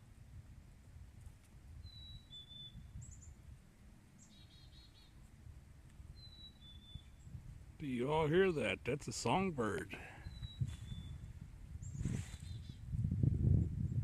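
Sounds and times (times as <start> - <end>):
songbird whistling and trilling: 1.8 - 3.4, 4.2 - 5.2, 6.1 - 7.4, 10.2 - 12.8.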